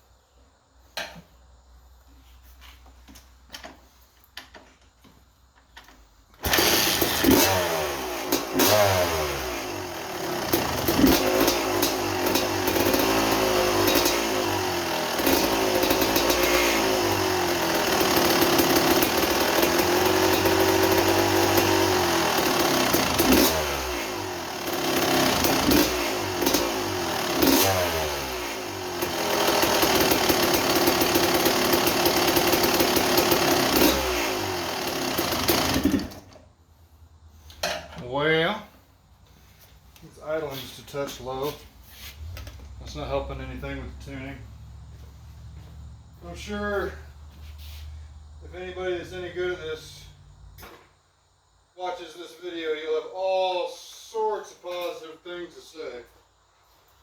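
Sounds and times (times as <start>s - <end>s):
two-stroke engine revving: 6.4s - 36.4s.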